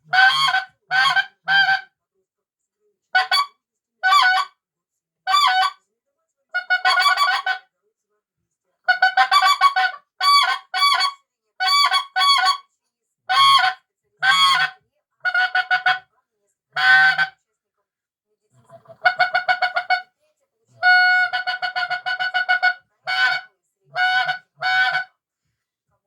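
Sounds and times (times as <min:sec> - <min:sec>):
goose call honks and yelps: 0:00.1 - 0:01.9, 0:03.2 - 0:04.5, 0:05.3 - 0:05.8, 0:06.6 - 0:07.6, 0:08.9 - 0:12.6, 0:13.3 - 0:16.1, 0:16.8 - 0:17.4, 0:18.7 - 0:20.0, 0:20.8 - 0:25.1.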